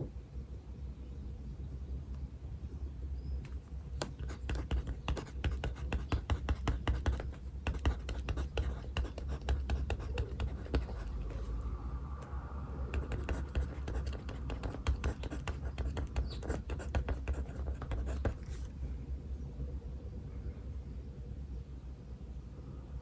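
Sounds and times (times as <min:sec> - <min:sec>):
steady low hum: 0:00.0 - 0:23.0
pen scratching on paper: 0:03.9 - 0:11.6, 0:12.9 - 0:18.7.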